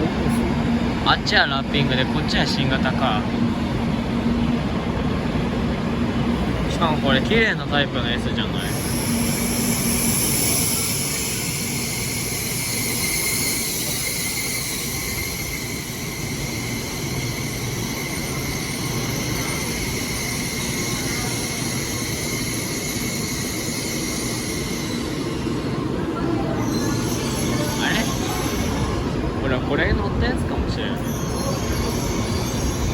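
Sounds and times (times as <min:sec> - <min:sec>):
train passing: 0:00.0 - 0:32.9
high-pitched whine: 0:08.6 - 0:24.8.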